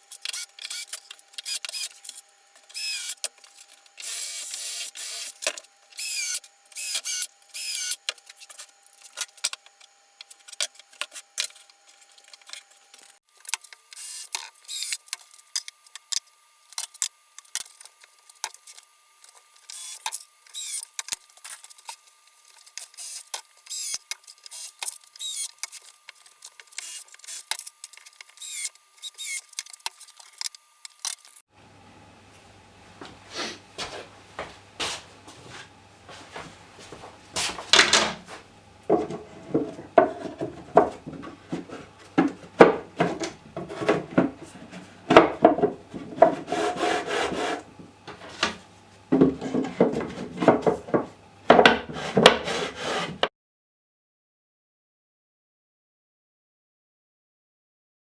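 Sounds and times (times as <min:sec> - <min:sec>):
wood and metal clanks: 0:37.6 - 0:38.3, 0:38.9 - 0:53.3.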